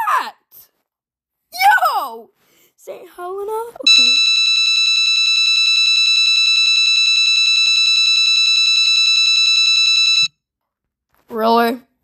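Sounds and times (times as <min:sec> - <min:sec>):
buzzy fluttering alarm tone: 0:03.9 - 0:10.3.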